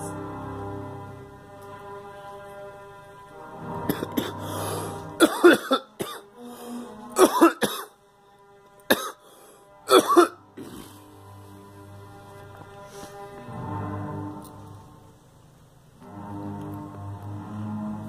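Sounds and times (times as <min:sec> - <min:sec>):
background music: 0:00.0 - 0:18.0
girl coughing: 0:05.2 - 0:06.3, 0:07.2 - 0:08.0, 0:08.9 - 0:09.2, 0:09.9 - 0:10.9.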